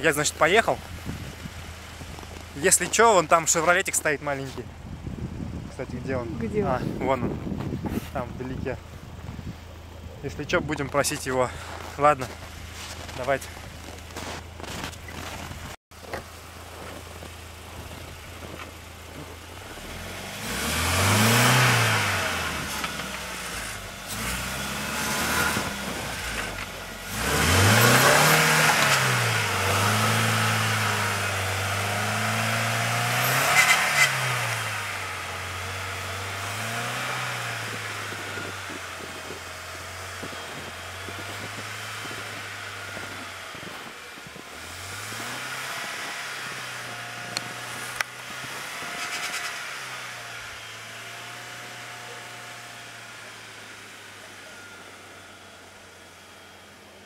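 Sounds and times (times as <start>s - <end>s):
wheels spinning in snow: 10.8s - 57.0s
engine revving: 17.8s - 57.0s.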